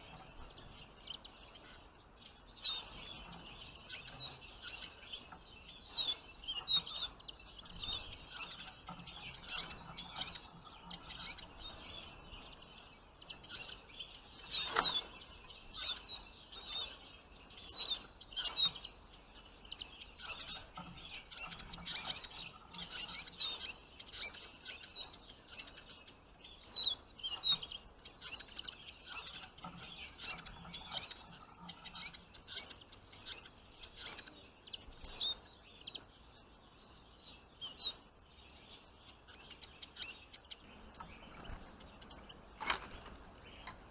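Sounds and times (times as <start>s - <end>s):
finches chirping: 0.0s - 43.9s.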